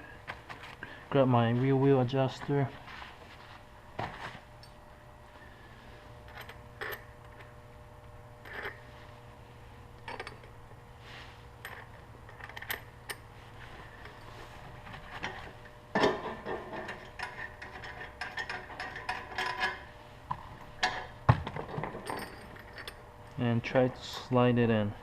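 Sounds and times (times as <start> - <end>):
metal parts clinking: 21.7 - 23.0.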